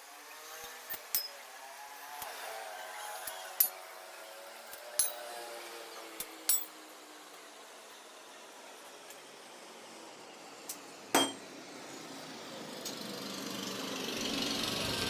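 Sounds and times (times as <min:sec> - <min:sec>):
metallic clinks of steel tools: 0:00.9 - 0:01.4, 0:05.0 - 0:05.2, 0:06.5 - 0:06.7.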